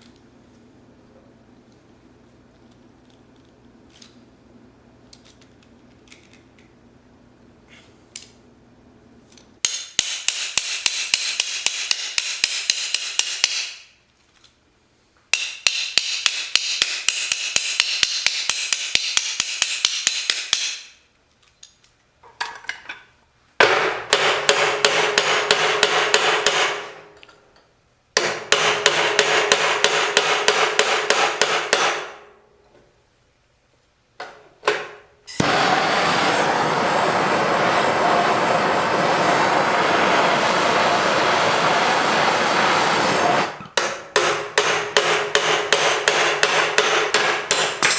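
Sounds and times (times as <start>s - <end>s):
welder arc crackling: 35.3s - 43.6s.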